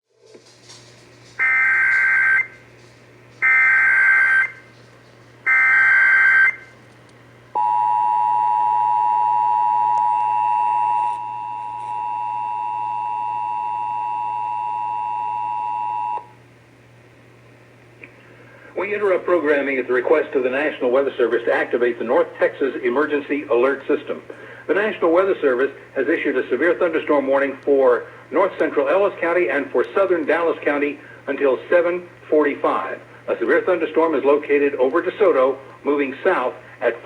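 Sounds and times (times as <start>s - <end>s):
steady low hum: 0.1s - 37.0s
two-tone attention signal: 7.6s - 16.3s.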